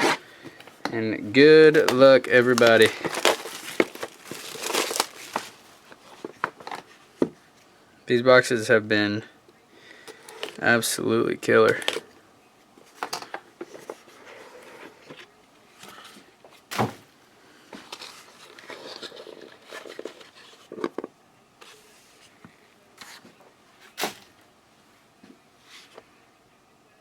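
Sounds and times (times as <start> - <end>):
rustling of card packs: 0.0 - 7.2, 17.6 - 21.0.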